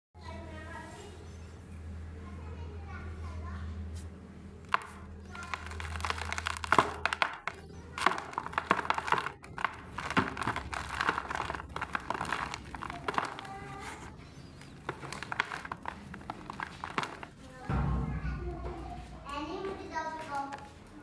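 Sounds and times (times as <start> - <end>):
dried mud crumbling and cracking: 4.7 - 18.0.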